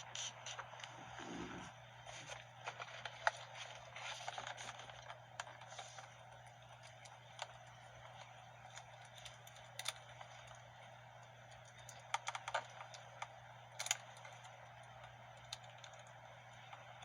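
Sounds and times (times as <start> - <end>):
plastic parts clicking and scraping: 2.2 - 6.1.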